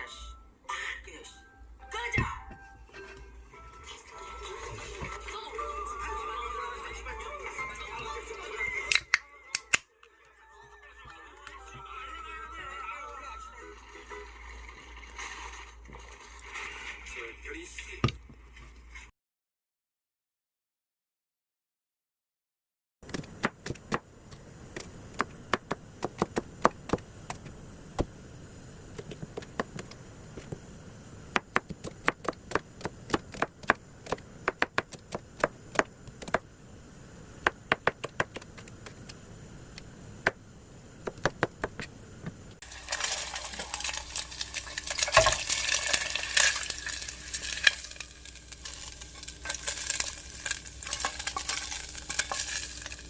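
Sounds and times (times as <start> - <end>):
food sizzling in a frying pan: 13.6 - 17.0, 42.6 - 53.0
steady low hum: 23.2 - 53.0.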